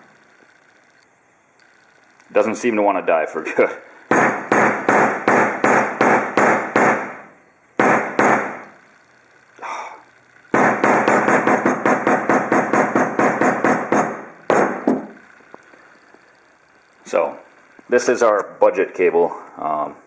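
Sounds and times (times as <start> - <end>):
hammer striking a cable: 4.1 - 7.2, 7.8 - 8.7, 10.6 - 15.1.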